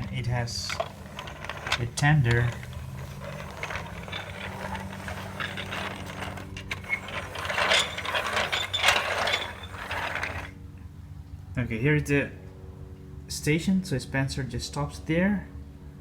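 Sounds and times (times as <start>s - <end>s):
toy train wheels rattling on track: 0.0s - 10.5s.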